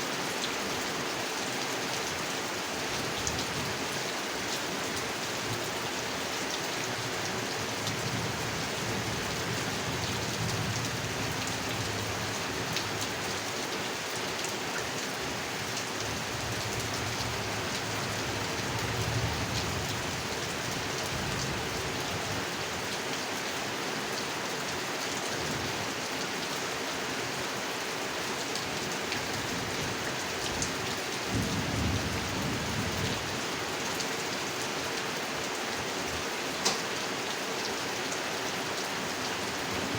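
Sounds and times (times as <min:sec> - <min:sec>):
heavy rain on a pond: 0:00.0 - 0:39.9
thunder rumbles: 0:31.3 - 0:33.2.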